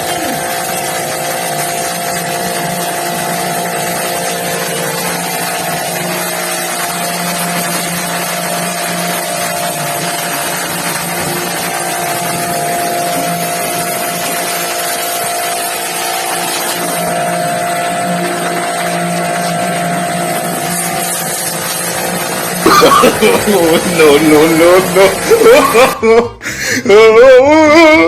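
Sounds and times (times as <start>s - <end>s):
machine running with hiss and hum: 0.0s - 26.2s.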